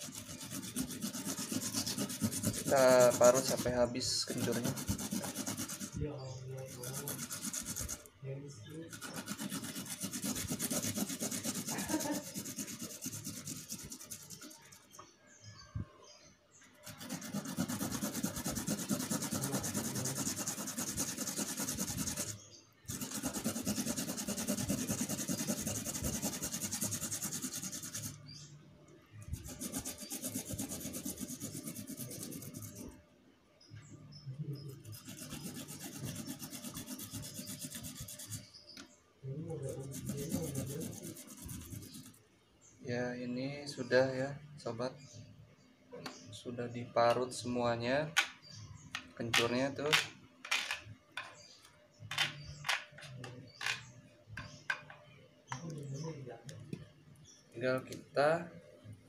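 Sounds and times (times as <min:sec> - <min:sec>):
rhizome rasping on a hand grater: 0:00.0 - 0:06.0, 0:06.6 - 0:08.1, 0:08.9 - 0:14.7, 0:16.8 - 0:28.2, 0:29.3 - 0:32.9, 0:34.6 - 0:38.6, 0:39.7 - 0:42.1.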